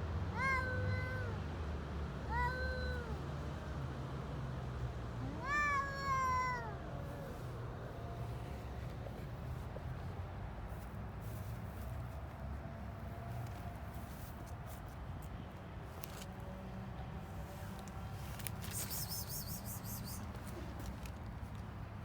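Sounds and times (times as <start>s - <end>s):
cat meowing: 0.3s - 1.4s, 5.2s - 6.8s.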